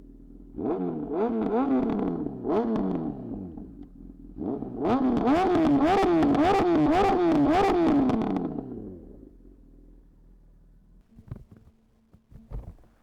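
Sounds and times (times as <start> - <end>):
motorcycle engine revving: 0.3 - 9.3.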